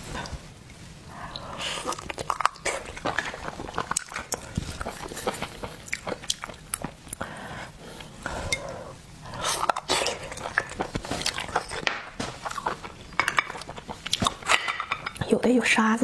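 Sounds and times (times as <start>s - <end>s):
wet chewing and lip smacking: 1.2s - 7.3s, 9.3s - 14.8s.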